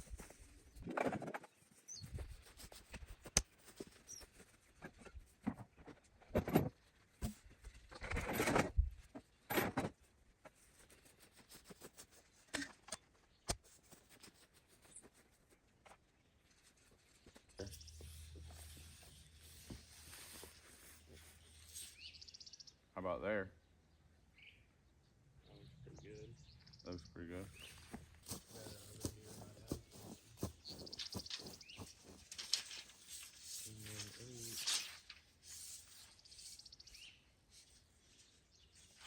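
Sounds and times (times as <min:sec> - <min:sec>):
scraping and rustling: 0:13.6 - 0:22.1, 0:27.4 - 0:36.7.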